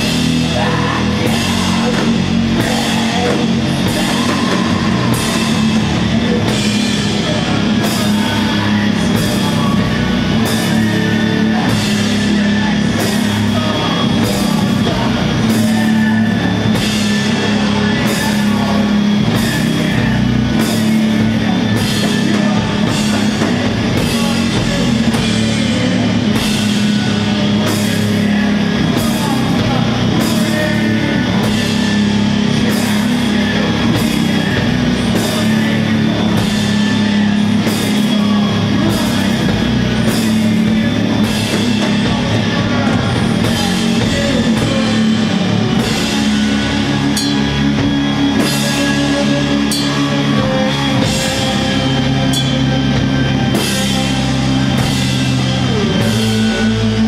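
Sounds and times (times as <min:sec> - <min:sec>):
metal band playing live: 0:00.0 - 0:57.0.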